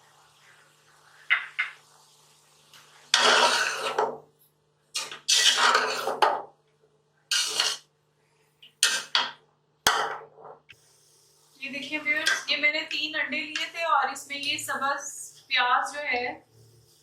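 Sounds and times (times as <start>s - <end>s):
spoon stirring in a pot: 2.9s - 6.6s, 7.3s - 7.9s, 8.6s - 10.0s, 12.1s - 12.6s.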